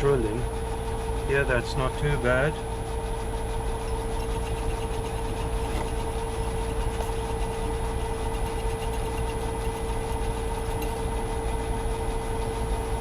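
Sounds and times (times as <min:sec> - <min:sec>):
lathe motor humming: 0:00.0 - 0:13.0.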